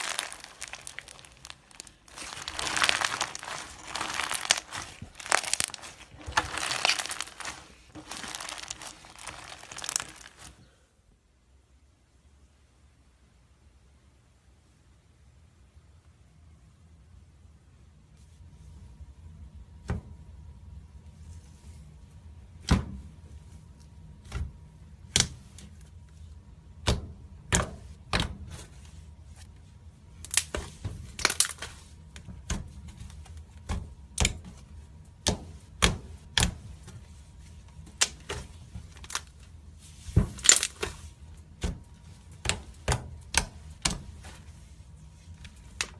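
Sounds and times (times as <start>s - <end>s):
slime crackling: 0.0s - 10.6s.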